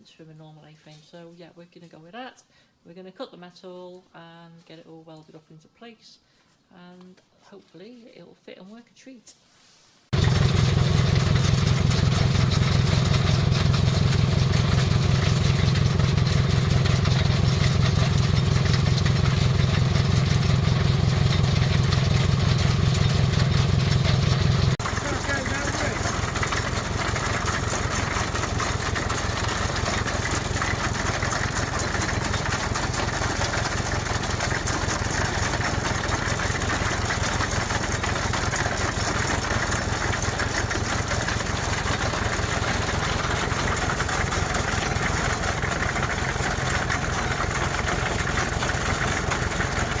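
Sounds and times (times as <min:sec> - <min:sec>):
engine idling: 0:10.1 - 0:50.0.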